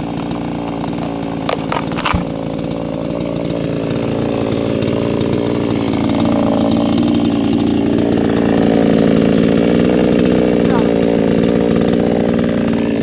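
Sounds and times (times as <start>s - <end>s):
chainsaw cutting wood: 0.0s - 13.0s.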